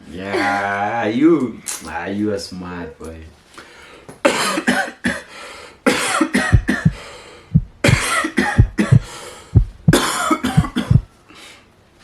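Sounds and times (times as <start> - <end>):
person coughing hard: 4.3 - 5.3, 5.9 - 7.0, 7.8 - 9.1, 9.9 - 11.1.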